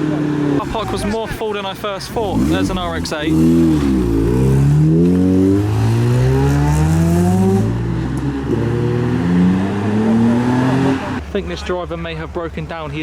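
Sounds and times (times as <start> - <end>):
rotary engine accelerating: 0.0 - 1.4, 2.0 - 11.3.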